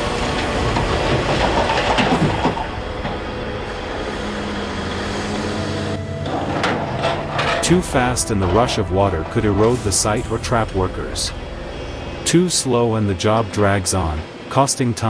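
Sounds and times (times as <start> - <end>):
diesel engine running: 0.0 - 15.0
metallic clanks: 5.6 - 14.4.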